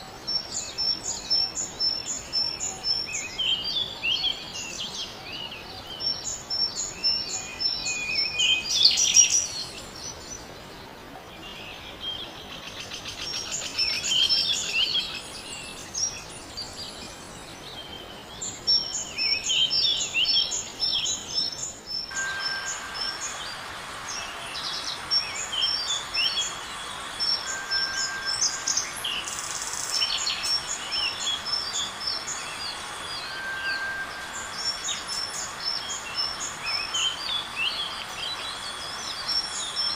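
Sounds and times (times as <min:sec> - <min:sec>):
background hiss: 0:00.0 - 0:39.9
birds chirping and calling: 0:18.4 - 0:39.9
short steady whistle: 0:22.1 - 0:24.5.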